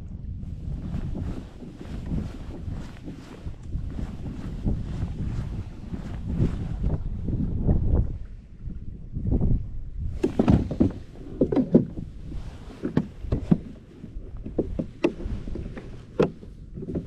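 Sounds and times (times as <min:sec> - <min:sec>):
knocks and scrapes on kayak hull: 0:00.5 - 0:07.1, 0:10.1 - 0:17.0.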